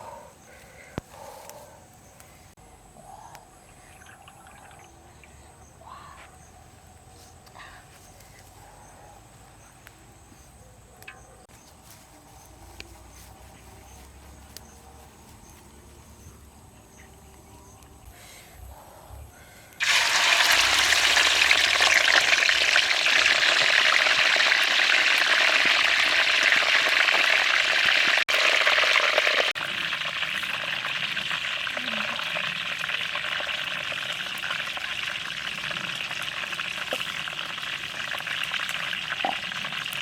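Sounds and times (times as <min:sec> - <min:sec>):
chicken sizzling in hot oil: 0:19.8 - 0:40.0.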